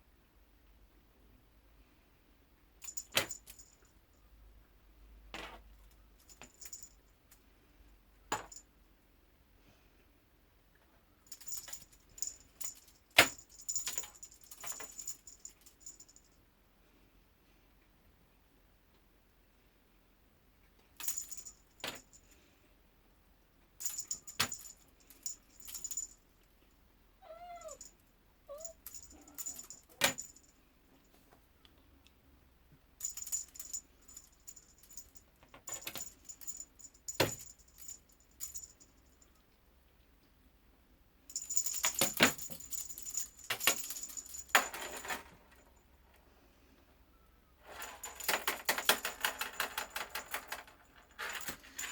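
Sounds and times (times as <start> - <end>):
light clicking and jingling rattles: 2.8 - 4.3, 5.6 - 7.4, 11.2 - 16.4, 21.0 - 22.5, 23.8 - 26.8, 27.4 - 31.4, 33.0 - 39.4, 41.3 - 46.3, 47.7 - 51.9
kitten meowing: 27.2 - 27.9, 28.5 - 29.4.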